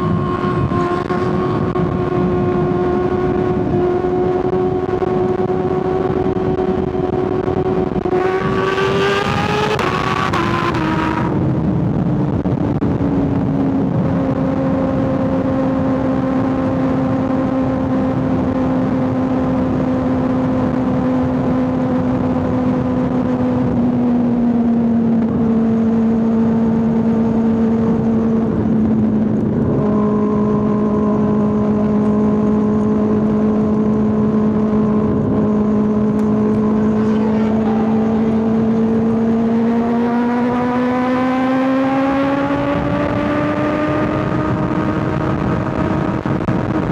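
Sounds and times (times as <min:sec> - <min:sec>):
wind rush: 0:00.0 - 0:25.7, 0:26.3 - 0:46.9
motorcycle engine cruising: 0:00.0 - 0:46.9.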